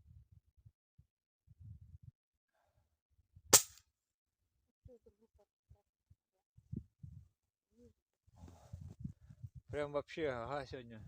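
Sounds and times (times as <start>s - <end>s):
wind buffeting microphone: 6.6s - 7.4s, 8.4s - 10.0s.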